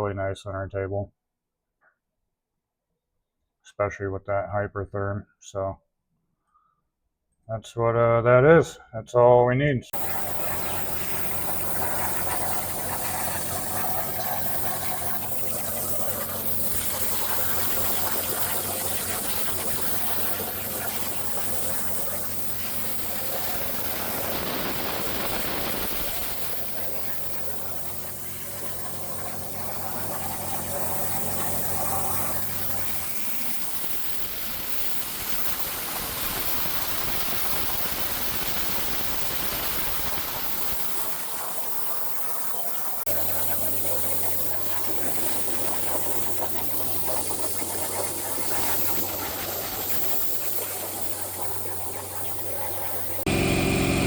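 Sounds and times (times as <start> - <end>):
plasma arc hissing: 10.0 - 53.7
low machine hum: 53.3 - 54.0.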